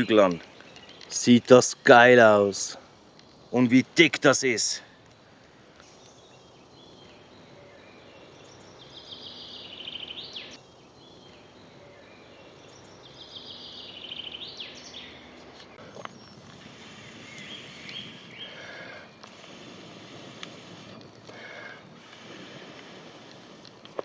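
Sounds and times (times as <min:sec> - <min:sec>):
woodland background: 0:00.0 - 0:24.0
songbird trilling: 0:06.0 - 0:18.8.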